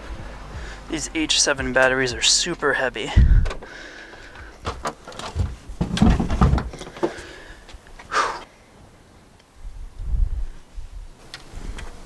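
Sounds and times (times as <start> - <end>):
deep thuds: 3.2 - 7.8
car battery clunking: 4.3 - 8.1.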